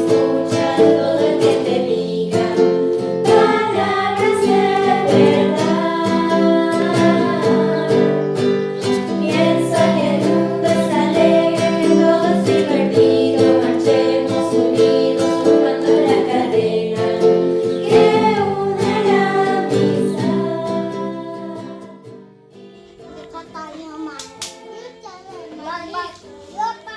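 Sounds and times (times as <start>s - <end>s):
person singing: 0.0s - 22.1s
guitar accompaniment: 0.0s - 26.9s.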